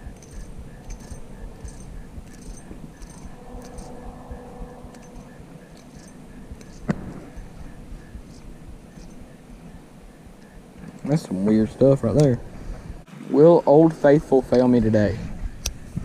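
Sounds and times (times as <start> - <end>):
faint high insect chirps: 0.0 - 11.0
handling noise: 0.0 - 13.0
low wind rumble: 0.0 - 16.0.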